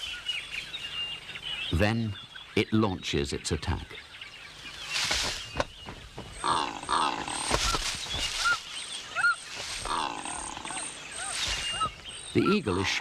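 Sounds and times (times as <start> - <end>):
harsh bird calls: 0.0 - 13.0
rush of wingbeats: 4.8 - 12.0
sharp kicking knocks: 5.0 - 6.7.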